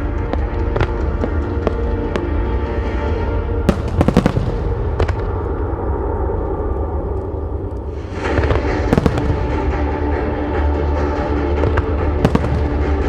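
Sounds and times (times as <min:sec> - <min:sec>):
firework shells bursting: 0:03.7 - 0:13.0.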